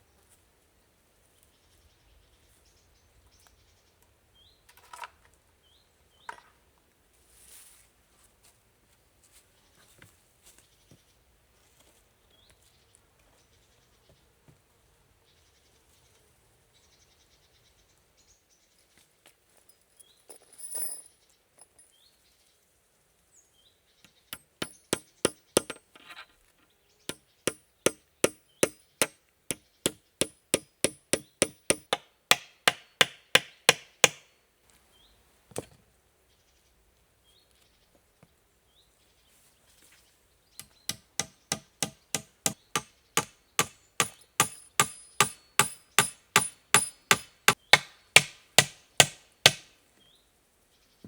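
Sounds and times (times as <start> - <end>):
hammer striking wood: 24.4 - 25.8, 27.1 - 34.3, 40.6 - 49.7.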